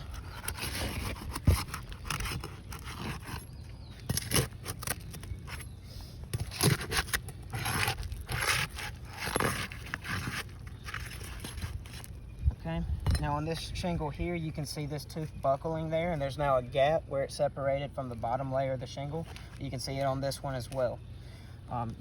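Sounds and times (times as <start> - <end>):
roof shingle scraping and tearing: 0.0 - 12.2.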